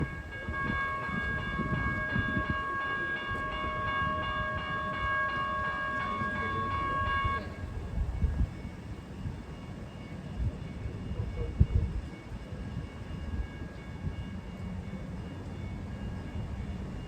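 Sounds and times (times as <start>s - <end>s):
multi-tone train horn: 0.0s - 8.3s
low rumble of train: 0.0s - 17.0s.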